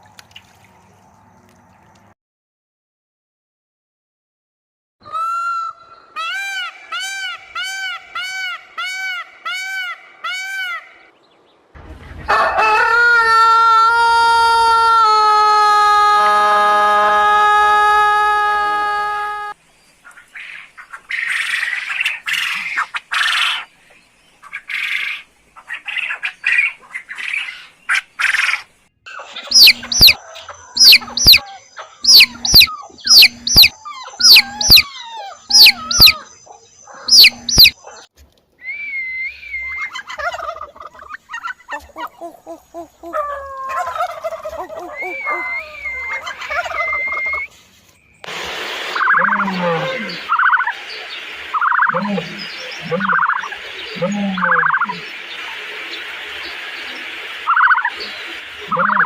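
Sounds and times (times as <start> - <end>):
loud sharp fowl calls: 5.0 - 11.1, 11.9 - 23.7, 24.4 - 38.0, 39.3 - 47.5, 48.2 - 59.0
harsh raspy fowl calls: 5.1 - 11.1, 24.5 - 38.0, 48.9 - 50.8, 51.4 - 55.2, 57.4 - 59.0
soft warbling fowl calls: 24.4 - 37.8, 39.3 - 47.5, 48.9 - 59.0.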